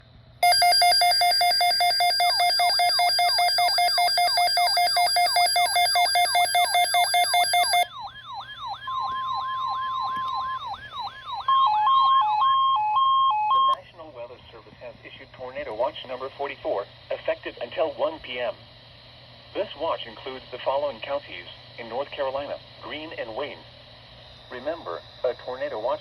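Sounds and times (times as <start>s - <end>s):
steady electronic alarm tone: 0.4s - 13.8s
warbling alarm tones: 0.4s - 13.8s.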